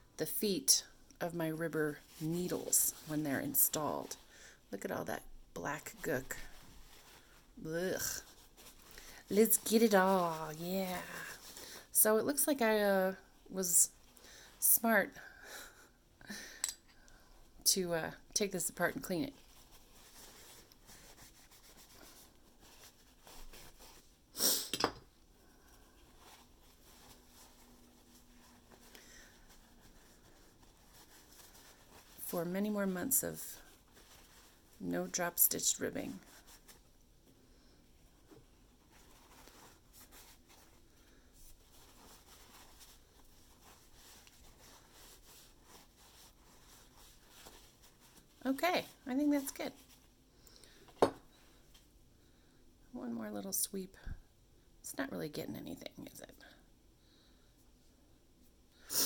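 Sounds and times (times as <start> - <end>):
paper towel rubbing and scraping: 5.8 - 12.6, 18.5 - 24.1, 26.0 - 36.8, 38.2 - 50.1.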